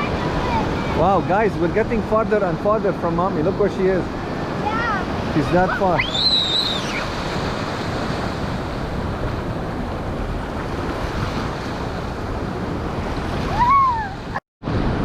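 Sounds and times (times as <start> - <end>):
ocean surf washing: 0.0 - 15.0
wind buffeting microphone: 0.0 - 15.0
short rising and falling cry: 6.0 - 7.2.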